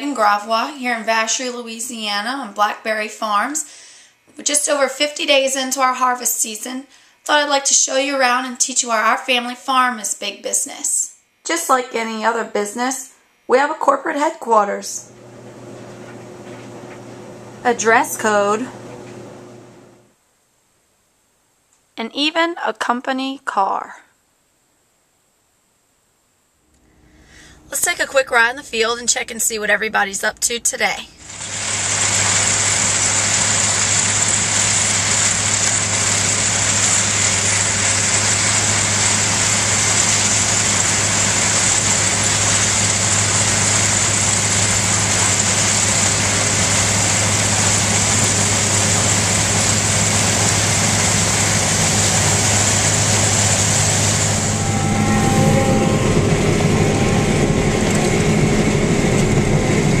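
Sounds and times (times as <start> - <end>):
vehicle engine running: 31.2 - 60.0.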